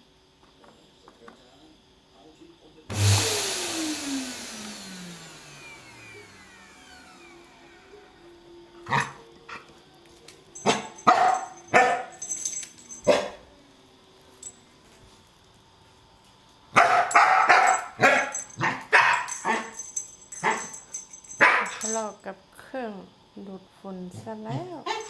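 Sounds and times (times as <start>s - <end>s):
dog barking: 8.9s - 9.6s, 10.6s - 12.2s, 13.1s - 13.4s, 16.7s - 19.8s, 21.4s - 21.9s.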